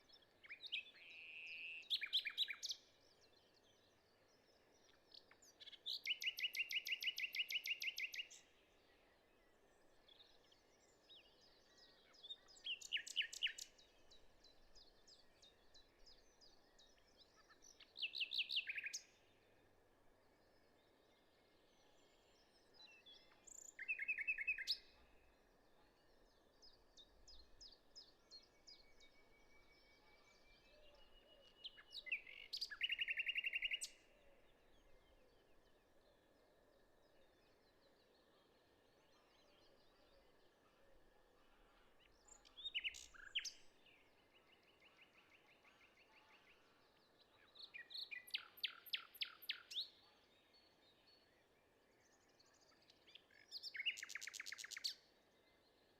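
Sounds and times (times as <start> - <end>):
faint bird chirps: 0.0 - 19.5, 20.3 - 55.9
songbird fast trill: 53.7 - 54.9.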